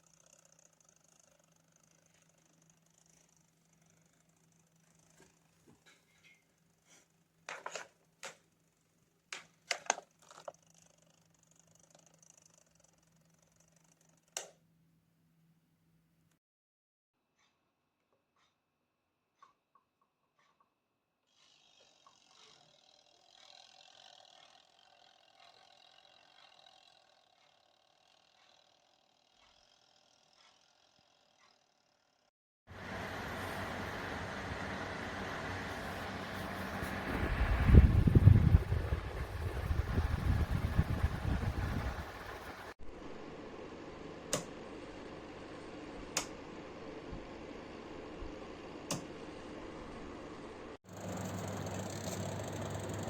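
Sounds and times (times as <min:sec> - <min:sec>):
floor fan running: 0:32.7 - 0:53.0.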